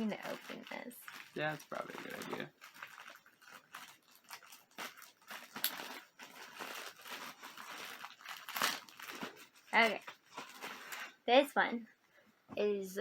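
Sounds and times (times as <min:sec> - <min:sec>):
packaging crinkling and tearing: 0:00.0 - 0:11.2.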